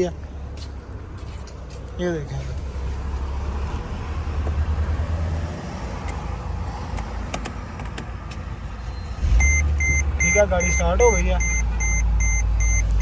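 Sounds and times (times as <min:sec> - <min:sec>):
car engine cranking and running: 0:06.0 - 0:13.0.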